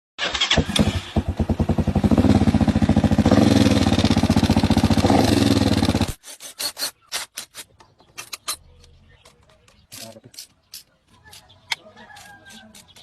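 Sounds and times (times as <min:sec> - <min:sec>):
motorcycle engine idling: 0:00.6 - 0:06.1.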